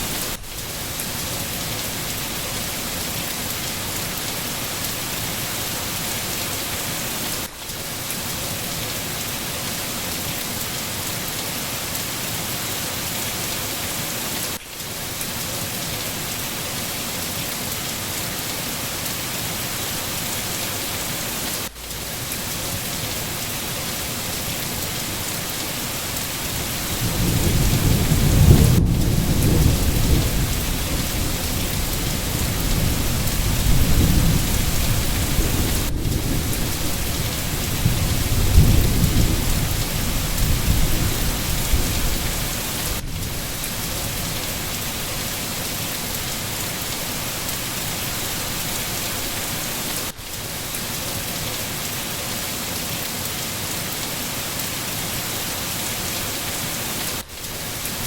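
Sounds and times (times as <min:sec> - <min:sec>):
steady rain hissing: 0:00.0 - 0:58.0
low roll of thunder: 0:26.6 - 0:44.2.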